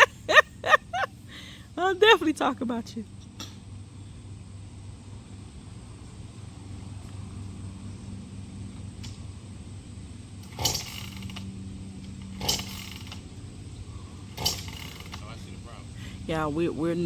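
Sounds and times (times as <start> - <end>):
low steady hum: 0.0 - 17.0
chainsaw starter cord rips: 10.4 - 11.5, 12.1 - 13.3, 14.3 - 15.4.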